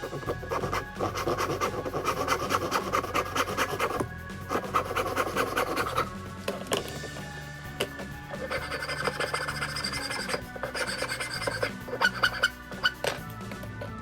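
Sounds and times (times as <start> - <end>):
hand rasp shaping wood: 0.0 - 6.1, 8.4 - 13.1
background music: 0.0 - 14.0.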